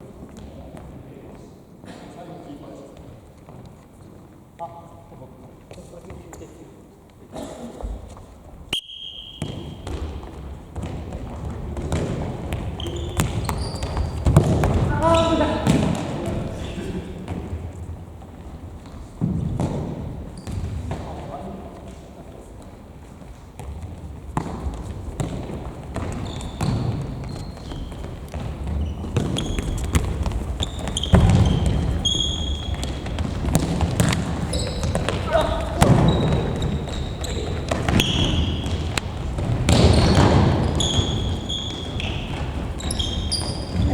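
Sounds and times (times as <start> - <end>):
sneakers squeaking on floor: 7.8 - 43.9
shrill whistle: 8.7 - 9.7
ball thudding on indoor court: 8.8 - 16.6, 17.2 - 22.0, 23.2 - 43.9.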